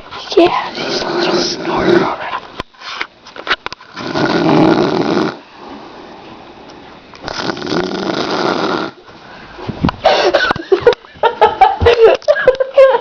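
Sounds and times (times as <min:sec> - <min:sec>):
woman snoring: 0:04.0 - 0:05.4, 0:07.3 - 0:09.0.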